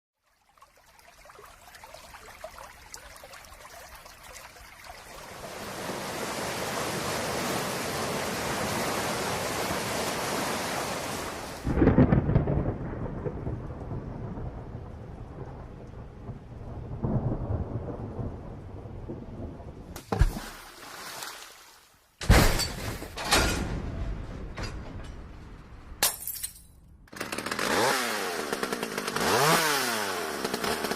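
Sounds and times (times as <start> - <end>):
steady rain: 0.7 - 20.0
thunderclap rumbling: 11.6 - 20.0.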